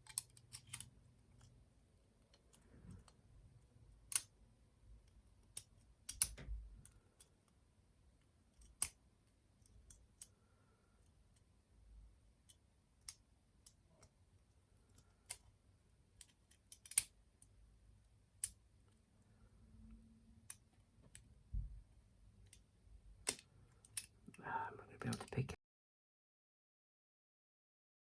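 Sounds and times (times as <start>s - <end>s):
lock picks clicking in padlock: 0.0s - 0.9s, 5.5s - 6.5s, 16.2s - 17.1s.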